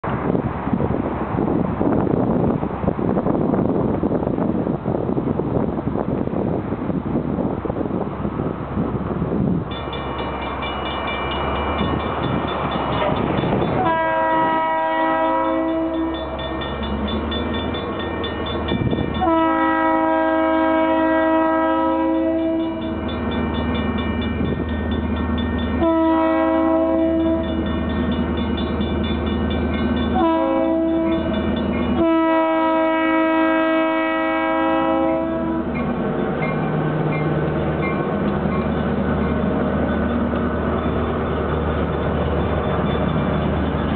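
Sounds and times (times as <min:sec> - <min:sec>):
locomotive air horn blasts: 0:13.8 - 0:16.4, 0:19.2 - 0:23.0, 0:25.8 - 0:27.6, 0:30.1 - 0:35.8.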